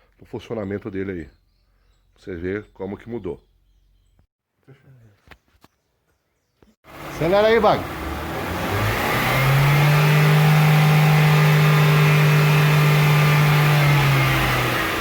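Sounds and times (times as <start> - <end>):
car engine revving: 6.9 - 15.0
mechanic talking: 7.1 - 8.0.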